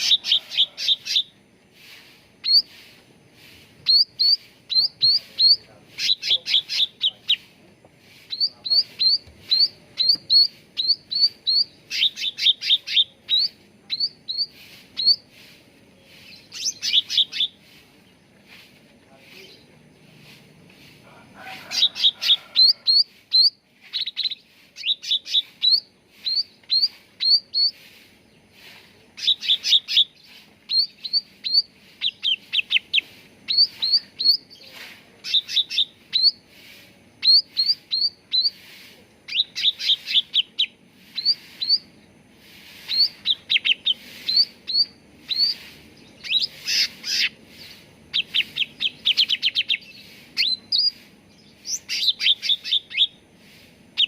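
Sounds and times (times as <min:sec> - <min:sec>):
bird song of high whistled notes: 0:02.4 - 0:02.8, 0:03.8 - 0:07.5, 0:08.2 - 0:15.4, 0:16.0 - 0:18.2, 0:21.7 - 0:28.6, 0:29.2 - 0:36.5, 0:37.2 - 0:38.7, 0:39.3 - 0:42.0, 0:42.7 - 0:53.2.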